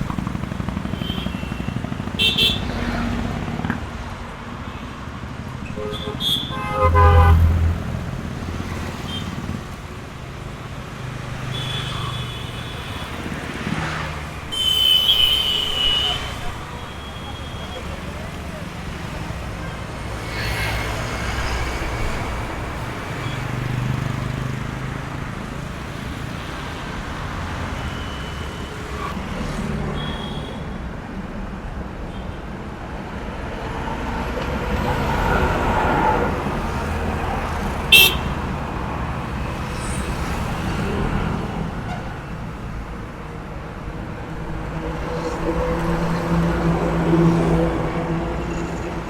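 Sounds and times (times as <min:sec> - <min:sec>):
vehicles driving past: 0:00.0 - 0:30.4, 0:32.8 - 0:49.0.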